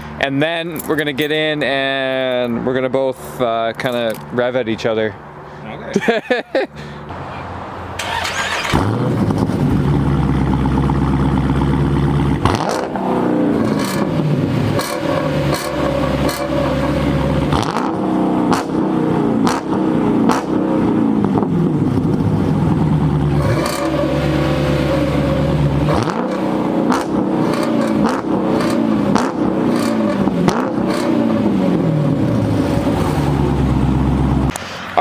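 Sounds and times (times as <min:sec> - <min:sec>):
car engines revving: 0:06.8 - 0:35.0.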